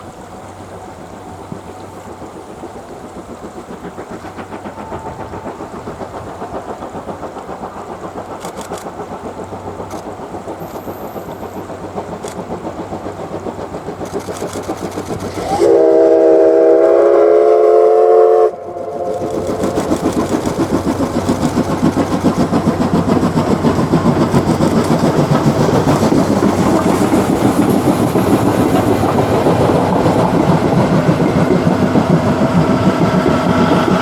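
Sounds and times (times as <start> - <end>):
steam locomotive chugging: 0.0 - 34.0
steam whistle blast: 15.3 - 19.7.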